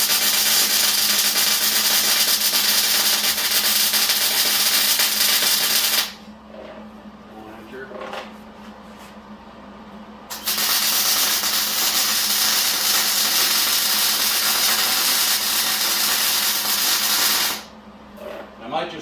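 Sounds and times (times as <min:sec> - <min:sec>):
welding arc crackling and hissing: 0:00.0 - 0:06.2, 0:10.3 - 0:17.7.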